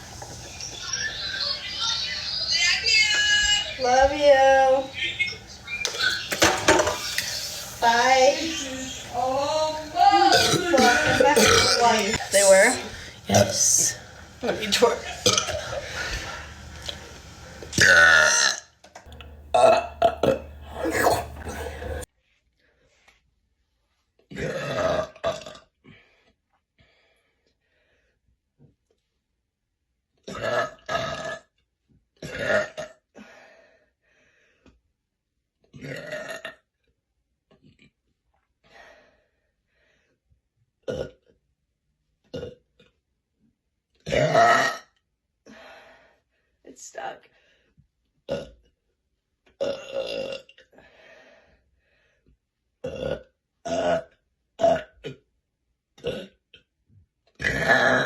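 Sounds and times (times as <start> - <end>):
woman burping loudly: 7.8 - 13.9, 14.8 - 15.8, 17.8 - 22.0, 32.2 - 32.9, 49.6 - 50.6, 52.8 - 54.0.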